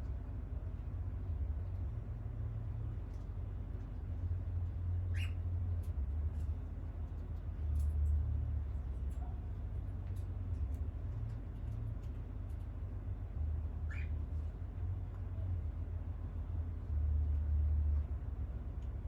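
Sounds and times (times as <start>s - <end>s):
parakeet chirp: 5.1s - 5.4s, 13.9s - 14.2s.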